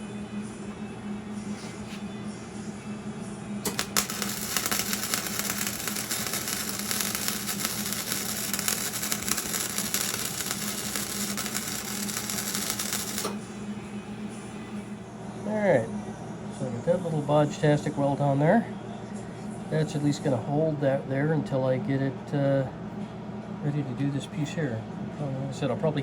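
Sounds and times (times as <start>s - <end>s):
steady low hum: 0.0s - 25.8s
sharp welding pops: 3.6s - 13.5s
arc welding crackle: 3.6s - 13.6s.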